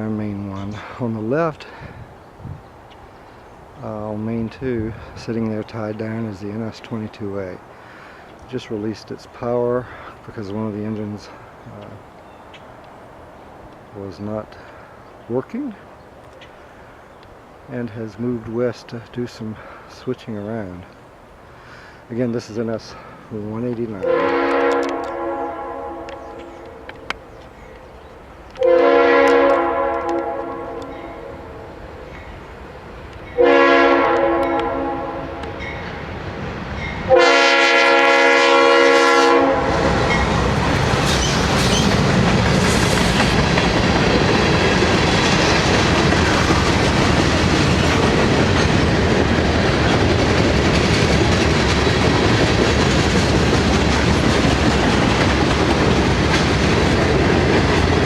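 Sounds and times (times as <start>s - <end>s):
diesel locomotives passing: 0.0s - 58.0s
locomotive horn blasts: 24.0s - 27.0s, 28.6s - 31.7s, 33.4s - 35.5s, 37.1s - 40.2s
train wheels clickety-clack: 40.0s - 58.0s.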